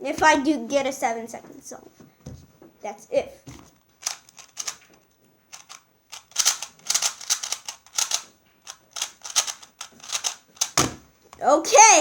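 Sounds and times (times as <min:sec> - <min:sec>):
plastic puzzle cube clicking: 0:04.0 - 0:10.9.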